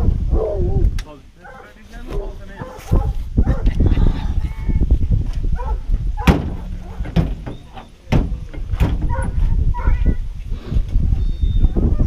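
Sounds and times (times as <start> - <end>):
sharp knocks: 6.2 - 9.1.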